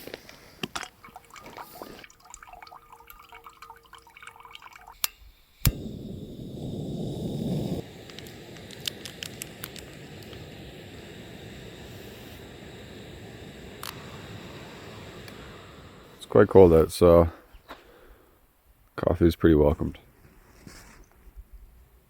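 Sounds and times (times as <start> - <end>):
gas stove rushing hiss: 0.0 - 2.0, 4.9 - 18.3
water dripping and pouring: 0.6 - 5.1.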